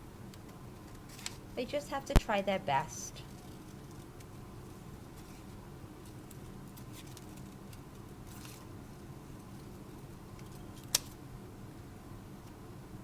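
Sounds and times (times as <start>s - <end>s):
low room hum: 0.0s - 13.0s
paper rustling: 5.0s - 11.2s.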